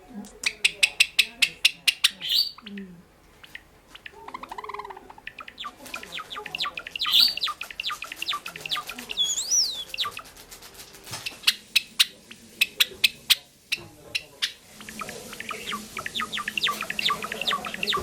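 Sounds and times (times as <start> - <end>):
sparrow clicks and chips: 0.2 - 13.5, 14.2 - 18.0
bird high whistle: 2.2 - 2.6, 8.3 - 10.3.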